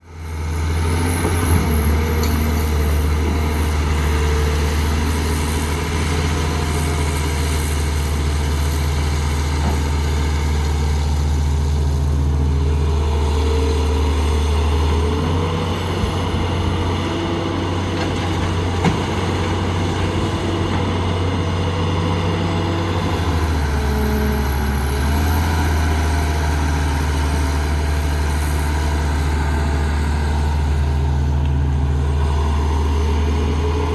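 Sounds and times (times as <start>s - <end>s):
diesel earthmoving equipment running: 0.0s - 33.9s.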